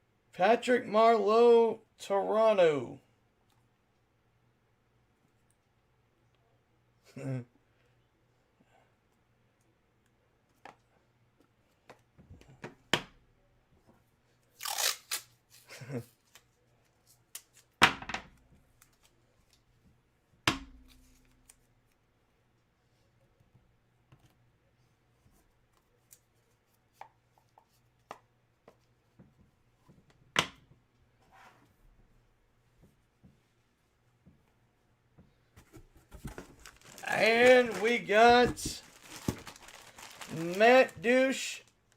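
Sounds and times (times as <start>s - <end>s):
packaging rustling and tearing: 14.6s - 15.4s, 36.2s - 41.4s.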